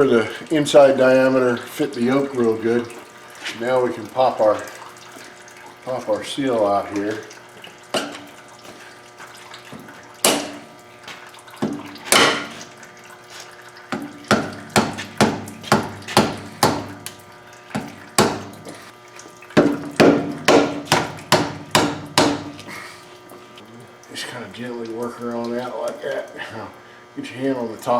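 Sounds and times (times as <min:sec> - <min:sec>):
hammer striking metal tool: 0:19.6 - 0:22.5.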